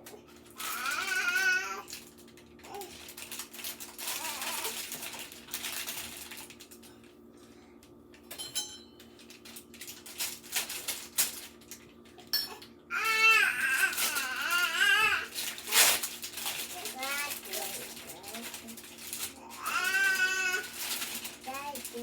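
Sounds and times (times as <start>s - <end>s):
packaging rustling: 0.6s - 6.9s, 9.2s - 12.0s, 13.5s - 22.0s
kitchen clinks and knocks: 8.3s - 9.1s, 12.3s - 12.7s.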